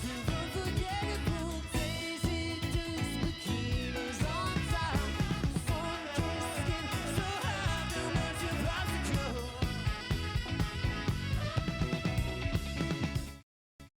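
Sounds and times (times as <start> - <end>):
pop music with singing and guitar: 0.0 - 13.3.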